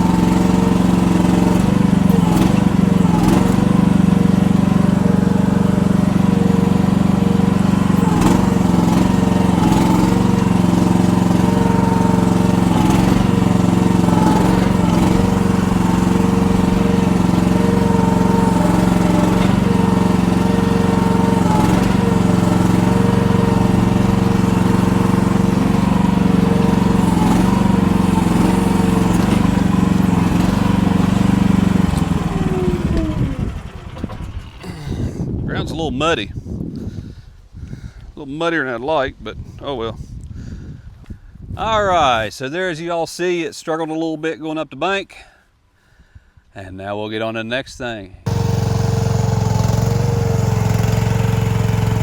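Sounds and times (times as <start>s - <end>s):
excavator engine under load: 0.0s - 35.6s, 48.2s - 52.0s.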